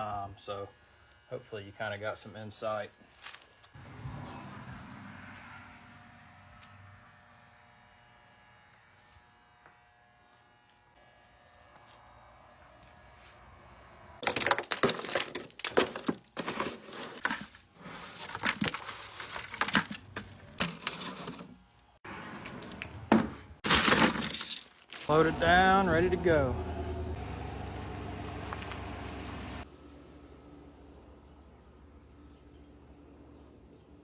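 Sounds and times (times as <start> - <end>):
crackling and rustling material: 23.6 - 25.1.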